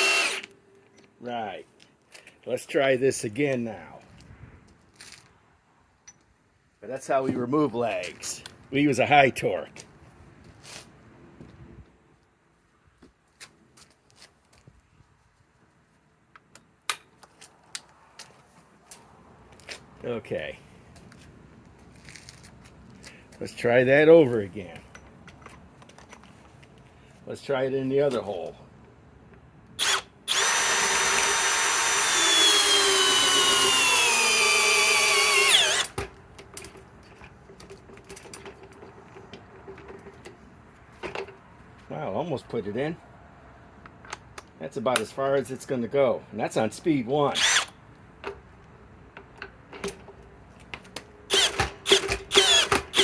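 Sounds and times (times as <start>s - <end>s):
cordless drill whining: 0.0s - 0.5s, 29.8s - 36.0s, 47.4s - 47.7s, 51.3s - 53.0s
tools and hardware clicking: 49.1s - 53.0s.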